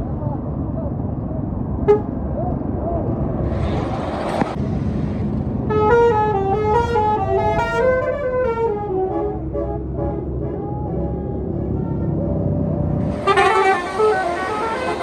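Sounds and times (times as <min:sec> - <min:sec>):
bus engine and road rumble: 0:00.0 - 0:15.0
bus horn tune: 0:05.7 - 0:12.3, 0:13.0 - 0:15.0.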